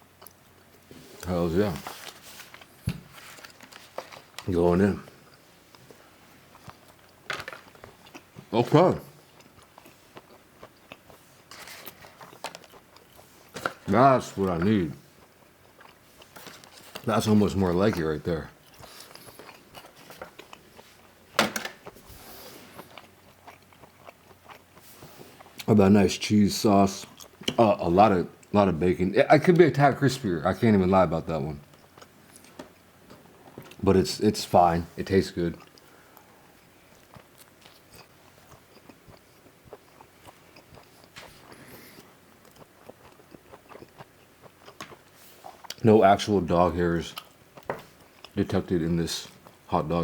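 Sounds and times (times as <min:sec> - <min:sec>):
person chewing food: 0:00.2 - 0:00.9, 0:05.1 - 0:08.5, 0:09.1 - 0:25.7, 0:27.0 - 0:27.6, 0:31.6 - 0:33.8, 0:35.6 - 0:45.8, 0:47.1 - 0:48.4.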